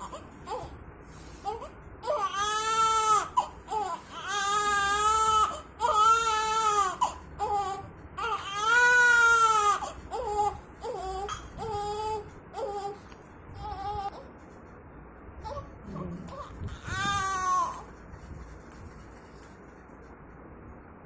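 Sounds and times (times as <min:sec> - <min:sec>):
newborn baby crying: 0:00.0 - 0:00.8, 0:01.4 - 0:14.3, 0:15.4 - 0:17.9.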